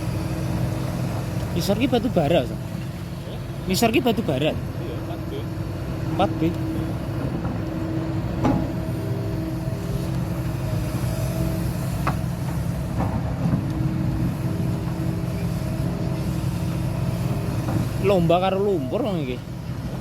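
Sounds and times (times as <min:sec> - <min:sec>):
excavator diesel engine running: 0:00.0 - 0:20.0.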